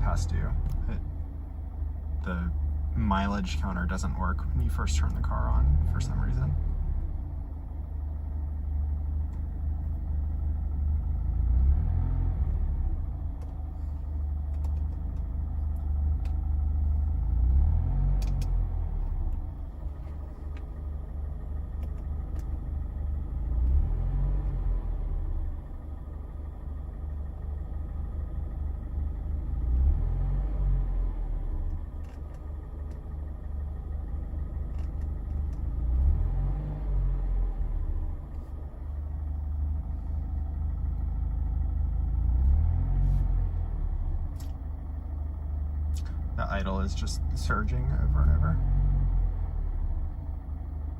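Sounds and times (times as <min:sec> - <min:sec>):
car engine idling roughly: 0:13.0 - 0:17.3, 0:19.1 - 0:23.6, 0:25.2 - 0:29.7, 0:31.5 - 0:36.0, 0:37.9 - 0:42.4.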